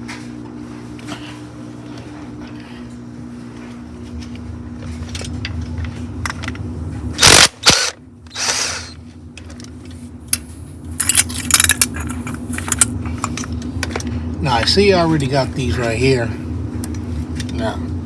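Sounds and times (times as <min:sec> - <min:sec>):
steady low hum: 0:00.0 - 0:18.0
power tool spinning bolts: 0:07.2 - 0:09.0
sharp clicks and rattles: 0:11.0 - 0:14.1.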